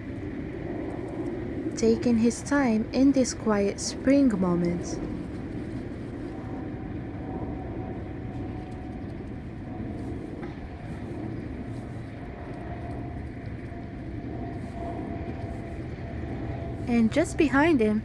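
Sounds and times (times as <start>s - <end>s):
low outdoor rumble: 0.0s - 18.0s.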